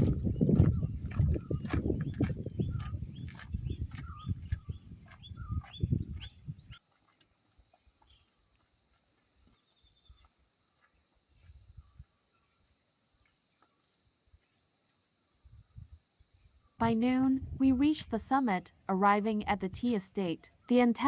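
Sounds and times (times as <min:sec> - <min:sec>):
insect chorus: 0:06.7 - 0:16.8.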